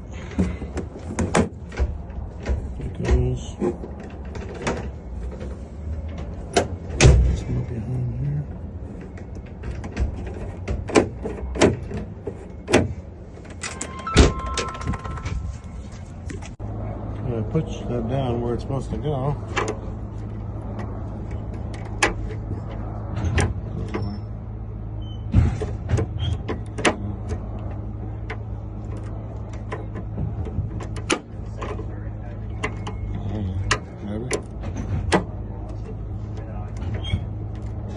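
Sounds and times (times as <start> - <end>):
steady low hum: 0.0 - 37.9
metal lock parts clicking: 9.0 - 15.5.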